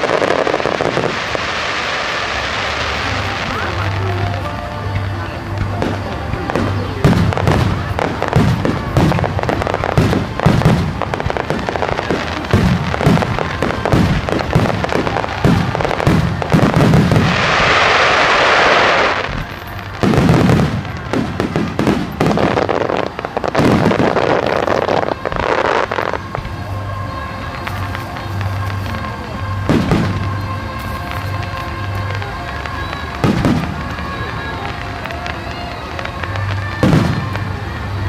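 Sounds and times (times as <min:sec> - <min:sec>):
fireworks bursting: 0:00.0 - 0:38.0
hissing fireworks burst: 0:00.0 - 0:38.0.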